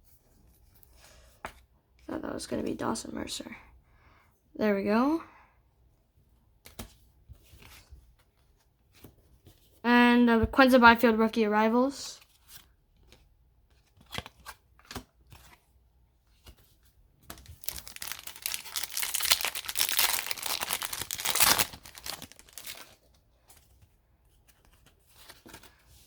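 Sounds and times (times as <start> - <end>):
foil wrapper ripping and crinkling: 17.4 - 23.0.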